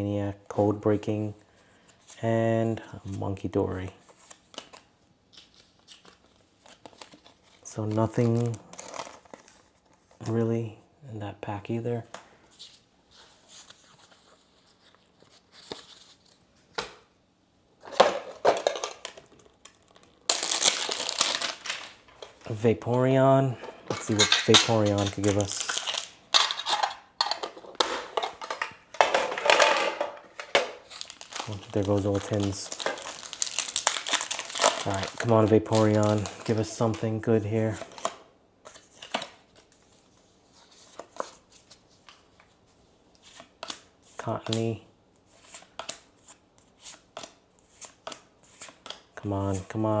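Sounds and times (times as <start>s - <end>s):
plastic packaging crinkling: 17.9s - 22.6s, 23.8s - 38.2s
cards sliding: 45.3s - 49.1s.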